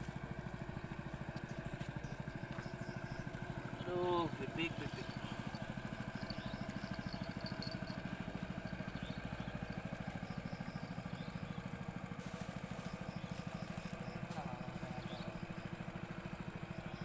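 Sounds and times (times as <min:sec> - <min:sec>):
small engine idling: 0:00.0 - 0:17.0.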